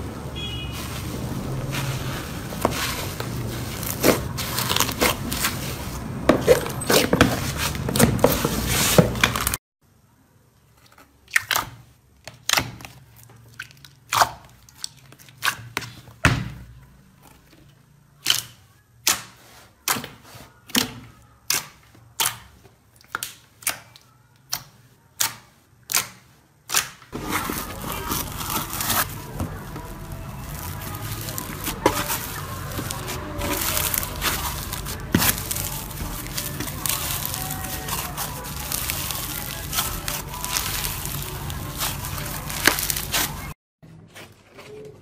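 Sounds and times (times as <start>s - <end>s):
slime popping and crackling: 25.2s - 43.6s.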